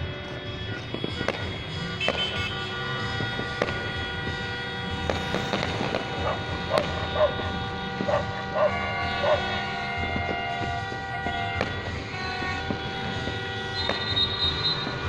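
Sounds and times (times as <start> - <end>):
firecracker pops: 0.3 - 8.3, 9.4 - 15.0
dog barking: 6.2 - 7.4, 8.1 - 9.5.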